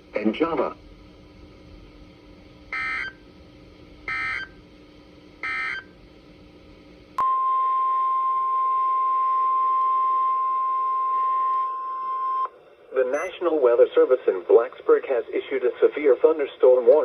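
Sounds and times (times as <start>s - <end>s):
faint hum: 0.0s - 17.0s
steady warning alarm tone: 2.7s - 3.2s, 4.1s - 4.6s, 5.4s - 5.9s.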